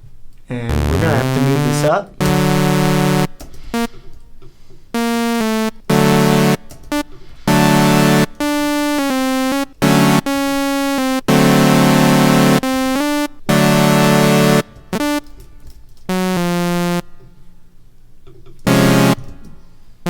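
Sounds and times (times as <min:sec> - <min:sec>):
buzzy synthesizer notes: 0:00.7 - 0:04.0, 0:05.0 - 0:15.4, 0:16.1 - 0:17.2, 0:18.7 - 0:19.4.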